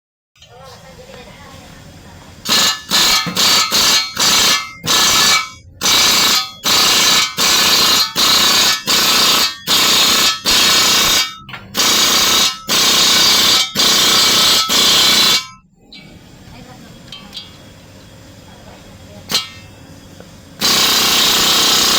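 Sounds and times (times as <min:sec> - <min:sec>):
pneumatic air tool hissing bursts: 0:02.4 - 0:15.5, 0:19.3 - 0:21.9.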